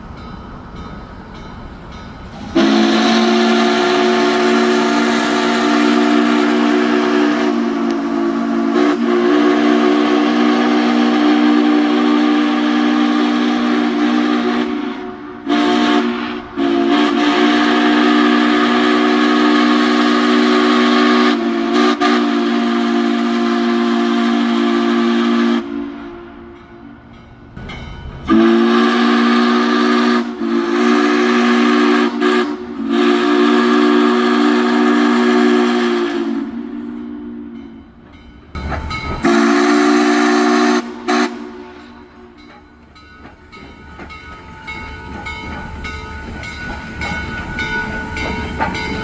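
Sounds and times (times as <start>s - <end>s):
steam locomotive whistle: 2.4s - 27.0s, 28.3s - 37.9s, 38.6s - 49.0s
hiss of steam: 38.6s - 49.0s.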